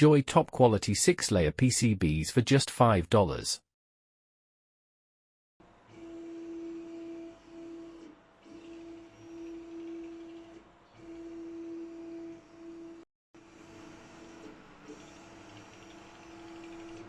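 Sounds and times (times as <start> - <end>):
printer motor whine: 5.8 - 17.0.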